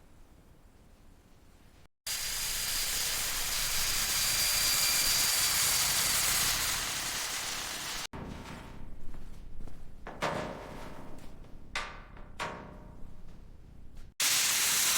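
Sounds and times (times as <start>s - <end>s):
loud steady hiss with whistle: 2.1s - 8.1s, 14.2s - 14.9s.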